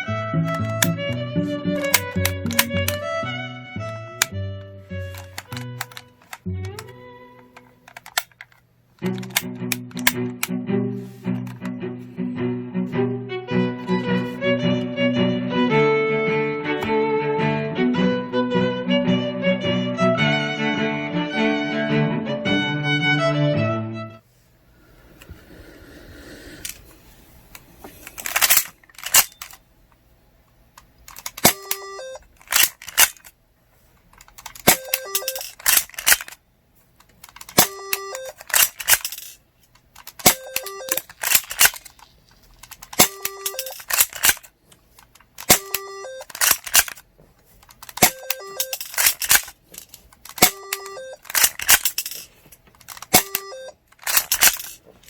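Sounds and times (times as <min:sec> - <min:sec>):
toy pistol clicks and snaps: 0:00.5 - 0:01.1, 0:01.7 - 0:03.0, 0:05.0 - 0:10.5, 0:28.1 - 0:29.6, 0:30.8 - 0:33.3, 0:34.2 - 0:36.4, 0:37.1 - 0:47.0, 0:47.6 - 0:52.2, 0:52.8 - 0:54.8.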